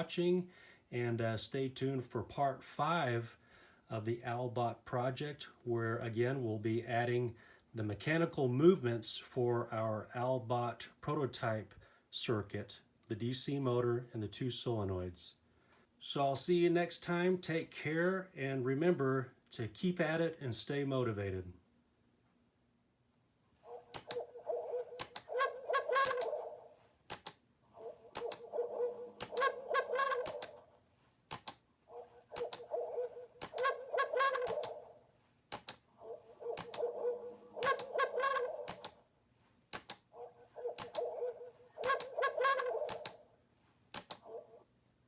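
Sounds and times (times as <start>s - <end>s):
sharp clicks with call-like tone: 23.9s - 26.4s, 27.1s - 27.4s, 28.1s - 28.5s, 29.2s - 30.6s, 31.3s - 31.6s, 32.3s - 32.8s, 33.4s - 34.8s, 35.5s - 35.8s, 36.6s - 36.9s, 37.5s - 39.0s, 39.7s - 40.1s, 40.7s - 41.2s, 41.8s - 43.2s, 44.0s - 44.3s.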